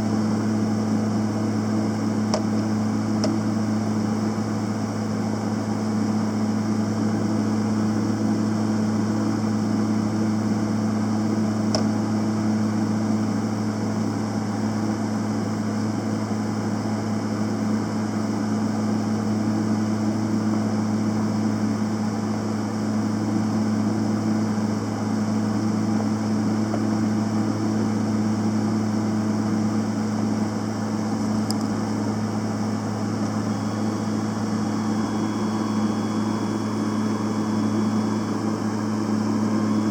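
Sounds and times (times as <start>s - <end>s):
welder humming: 31.0s - 39.9s.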